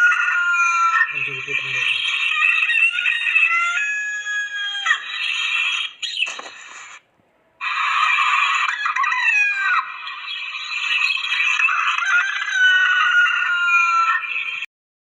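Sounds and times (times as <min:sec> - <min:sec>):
rooster crowing: 0:11.6 - 0:14.4.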